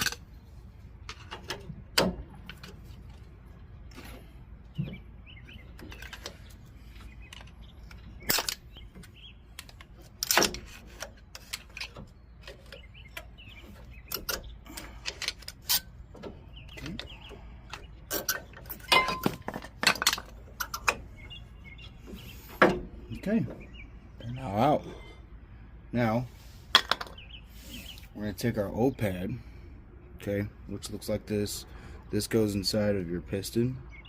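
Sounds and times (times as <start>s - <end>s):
metal brake parts clicking and knocking: 0.0s - 0.3s, 5.6s - 21.4s.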